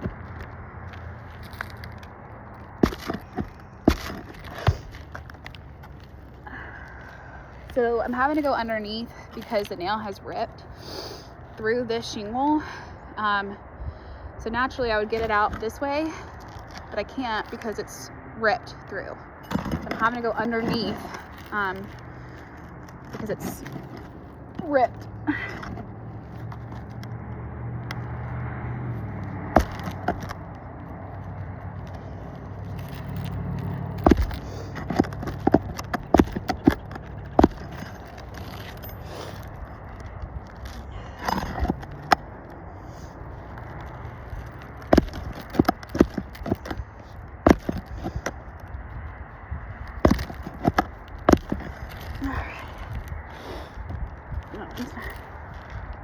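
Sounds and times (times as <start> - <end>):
steady low rumble: 0.0 - 56.0
sharp knocks and clicks: 32.8 - 38.8.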